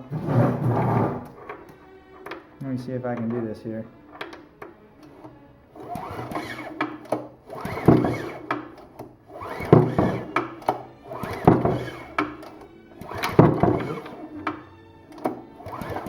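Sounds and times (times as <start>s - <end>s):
pull-start cord cranking engine: 5.0s - 16.0s.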